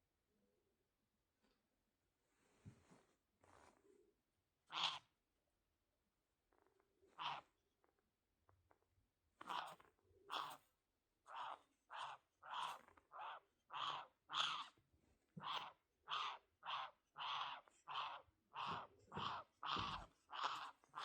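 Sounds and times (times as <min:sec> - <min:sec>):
parrot harsh calls: 0:11.4 - 0:14.8, 0:15.4 - 0:21.0.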